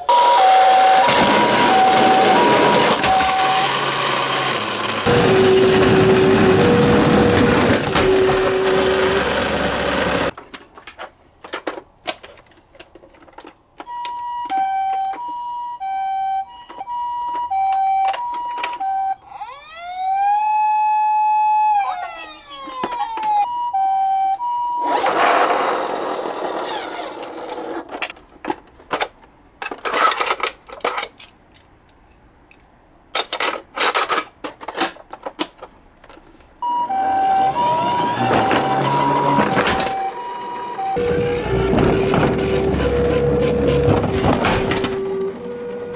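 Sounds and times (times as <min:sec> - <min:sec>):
electronic hi-lo siren: 0:00.0 - 0:10.3, 0:15.8 - 0:25.1, 0:36.6 - 0:45.9
siren wail: 0:00.0 - 0:10.3, 0:13.9 - 0:25.3, 0:36.6 - 0:45.9.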